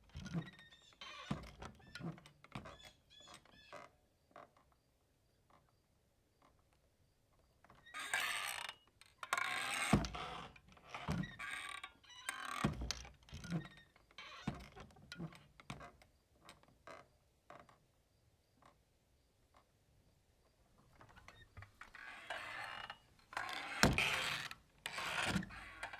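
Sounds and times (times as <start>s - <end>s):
door hinges creaking: 9.4s - 15.9s, 21.0s - 25.9s.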